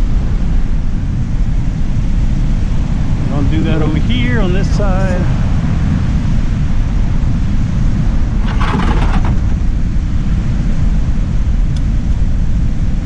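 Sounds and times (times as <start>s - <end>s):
wind buffeting microphone: 0.0s - 13.0s
brief rustling: 8.3s - 9.7s.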